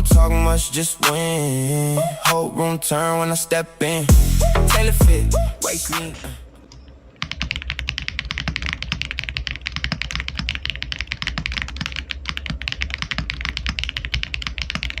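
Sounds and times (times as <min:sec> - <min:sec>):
mechanical keyboard typing: 0:07.2 - 0:15.0.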